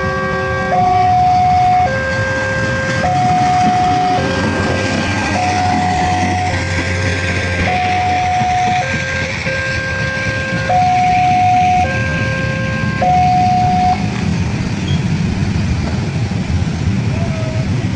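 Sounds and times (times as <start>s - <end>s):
level-crossing warning siren: 0.0s - 14.2s
traffic noise: 0.0s - 17.9s.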